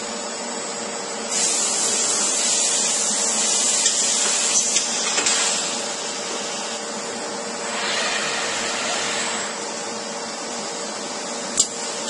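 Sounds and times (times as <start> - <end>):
cnc woodworking machine hum: 5.7 - 12.0.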